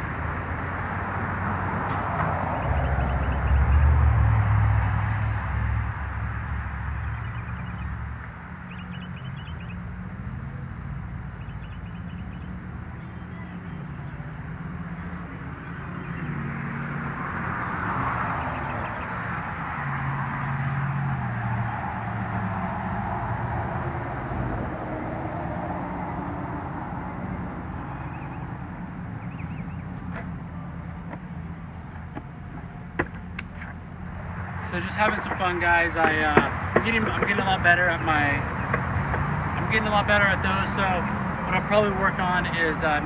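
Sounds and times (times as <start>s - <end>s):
skateboard wheels rolling on pavement: 25.7s - 43.0s.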